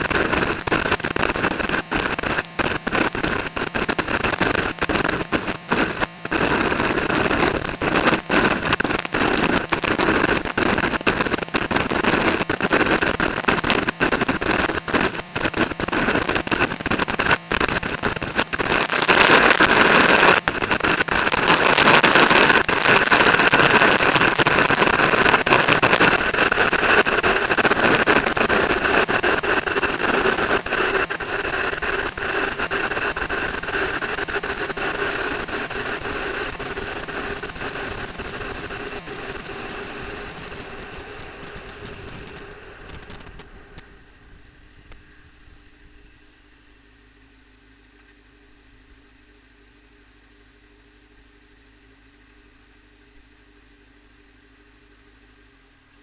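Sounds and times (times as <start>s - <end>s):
motorcycle engine running: 24.0s - 44.4s.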